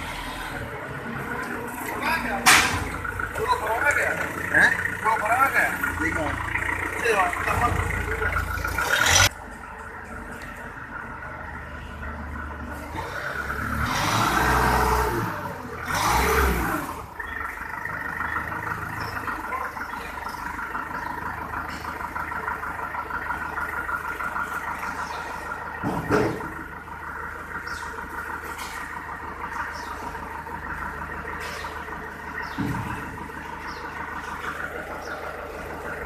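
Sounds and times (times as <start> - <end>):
heavy vehicle engine running: 0.0 - 36.0
metallic clunk: 2.4 - 3.2.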